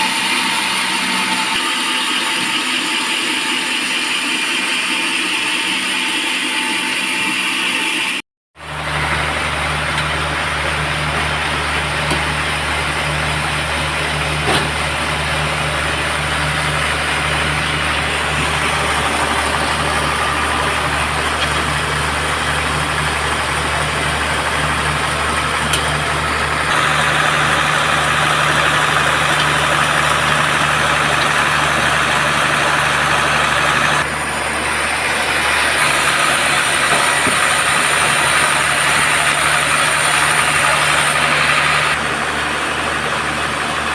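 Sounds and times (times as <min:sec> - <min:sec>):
sawmill machine hum: 0:00.0 - 0:43.9
hissing saw noise: 0:14.2 - 0:43.0.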